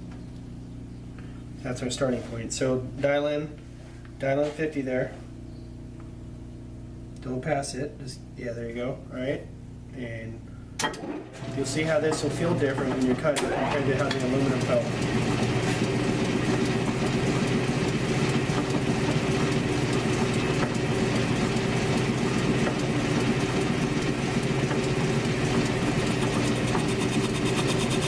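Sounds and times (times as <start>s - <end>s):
metal lathe motor hum: 11.3s - 28.0s.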